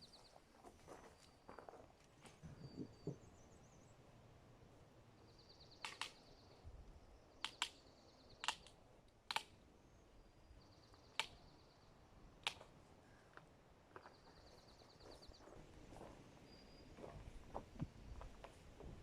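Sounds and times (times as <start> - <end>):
bird chirps: 0.0 - 1.3, 2.4 - 4.0.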